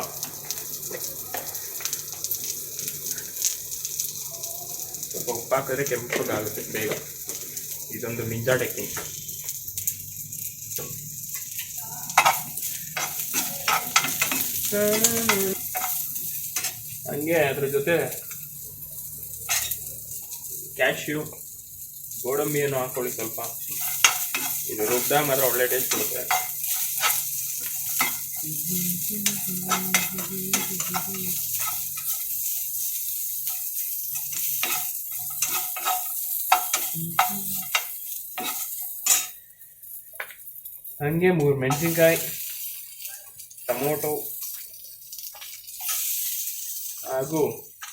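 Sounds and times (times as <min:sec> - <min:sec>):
onions frying in oil: 0:00.0 - 0:47.9
spatula scraping a pan: 0:10.8 - 0:18.4, 0:19.4 - 0:20.0, 0:22.4 - 0:28.5, 0:29.2 - 0:39.5, 0:41.6 - 0:43.0, 0:43.6 - 0:47.0.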